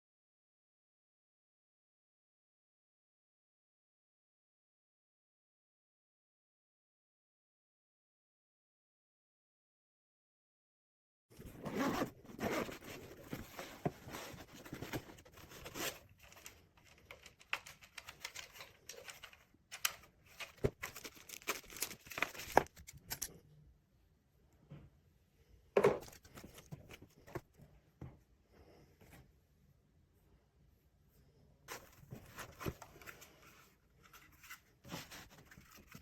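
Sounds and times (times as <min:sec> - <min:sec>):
rustling and tearing: 0:11.4 - 0:23.3, 0:31.7 - 0:36.0.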